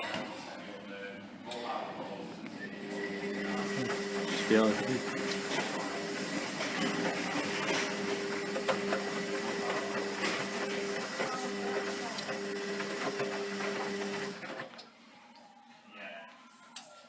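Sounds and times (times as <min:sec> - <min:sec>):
washing machine motor hum: 0:02.7 - 0:14.8.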